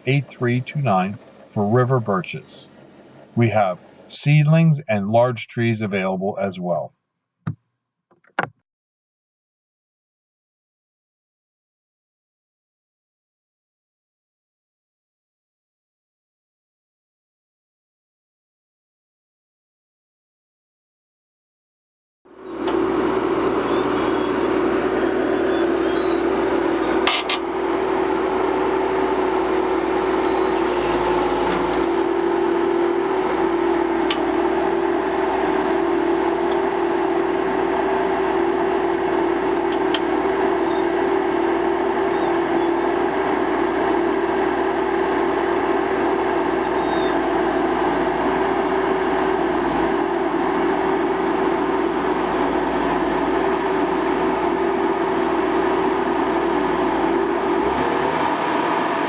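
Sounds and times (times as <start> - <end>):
steady mechanical hum: 22.4 - 59.0.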